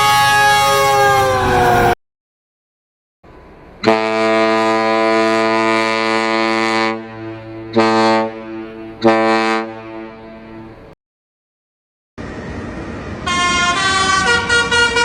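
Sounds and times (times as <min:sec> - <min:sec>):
train horn blasts: 0:00.0 - 0:02.0, 0:03.8 - 0:10.8, 0:13.2 - 0:15.0.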